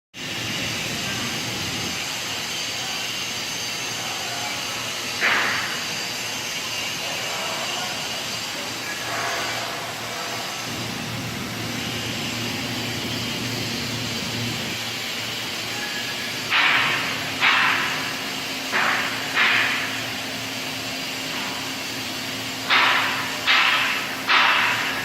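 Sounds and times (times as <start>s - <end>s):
machinery whirring and humming: 0.2s - 25.0s.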